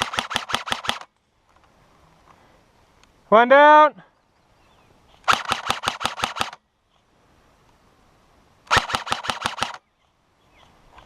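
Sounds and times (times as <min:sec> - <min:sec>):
airsoft gun rapid shots: 0:00.0 - 0:01.1, 0:05.3 - 0:06.6, 0:08.7 - 0:09.8.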